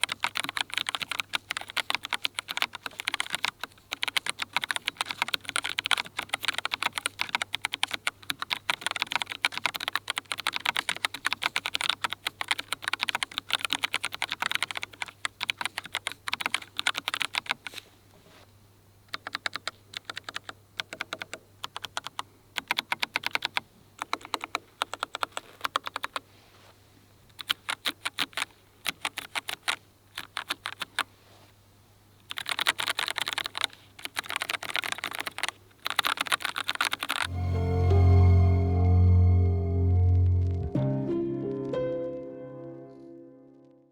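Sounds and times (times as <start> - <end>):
mechanical keyboard typing: 0.0 - 17.7, 19.1 - 26.2, 27.4 - 31.1, 32.3 - 37.3.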